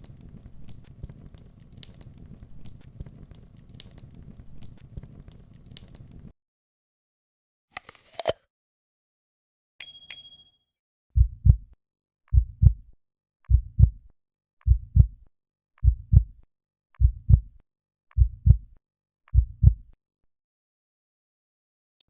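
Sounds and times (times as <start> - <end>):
heartbeat double thumps: 11.2 - 11.7, 12.3 - 12.9, 13.5 - 15.2, 15.8 - 16.4, 17.0 - 18.7, 19.3 - 19.9.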